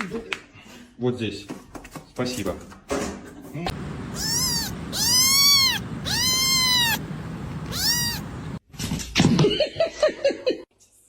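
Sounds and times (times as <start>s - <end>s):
cat meowing: 3.8s - 8.6s.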